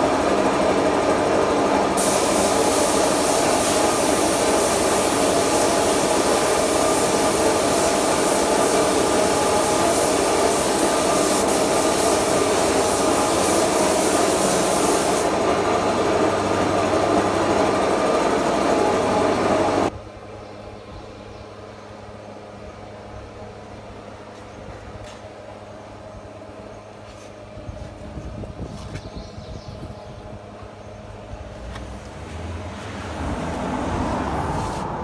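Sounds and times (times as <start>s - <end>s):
loud rushing hiss of woodworking: 1.9s - 15.6s.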